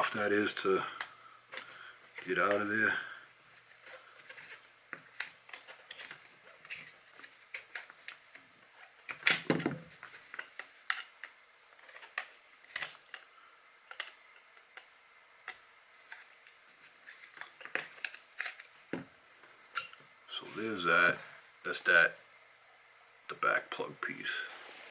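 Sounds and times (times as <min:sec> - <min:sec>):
small metal clicks and scrapes: 0:03.8 - 0:09.4.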